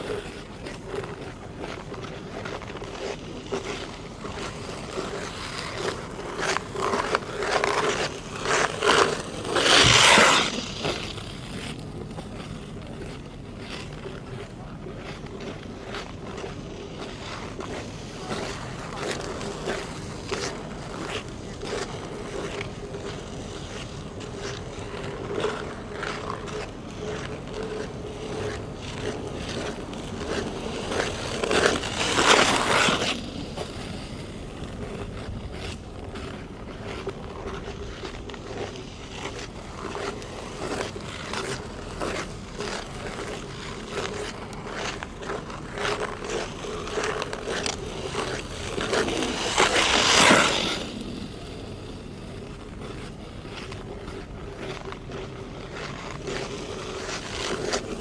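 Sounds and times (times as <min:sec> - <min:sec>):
ice skates scraping on ice: 0:00.0 - 0:58.0.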